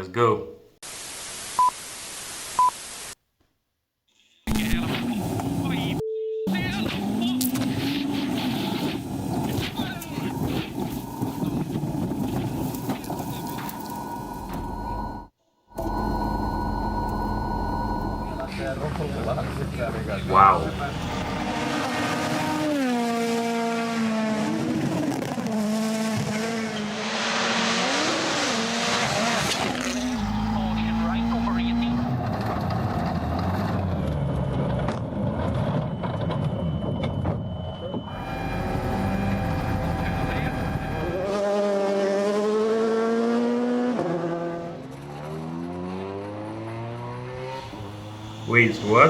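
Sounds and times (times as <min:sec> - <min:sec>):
rally car engine: 0:04.5 - 0:15.2, 0:15.8 - 0:49.0
tyres rushing: 0:04.5 - 0:23.5, 0:47.4 - 0:49.0.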